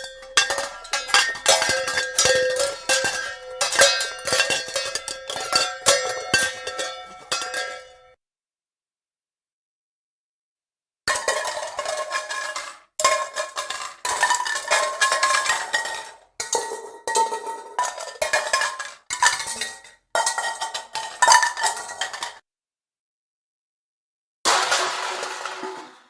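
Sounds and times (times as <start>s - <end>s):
metal pots and pans clattering: 0.0s - 8.2s, 11.1s - 22.4s.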